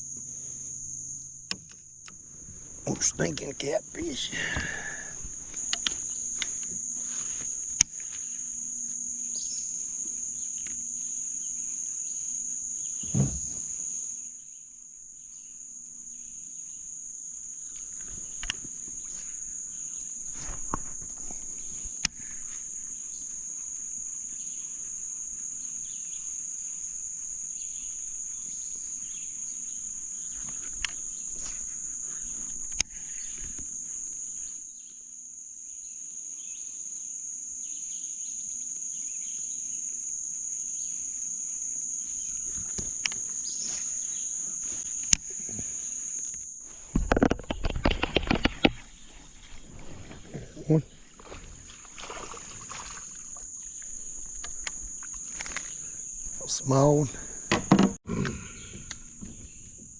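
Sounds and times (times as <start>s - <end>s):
insect chorus buzzing: 0.0s - 59.9s
low thump: 13.0s - 13.7s
sharp clicks and knocks: 46.9s - 48.8s.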